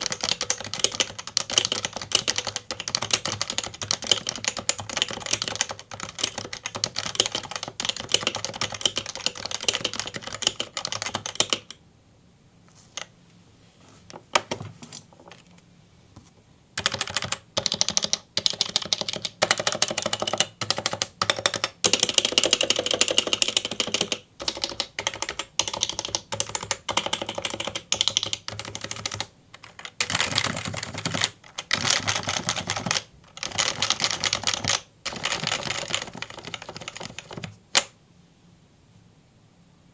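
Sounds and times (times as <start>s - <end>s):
keyboard typing thocks: 16.8s - 37.9s.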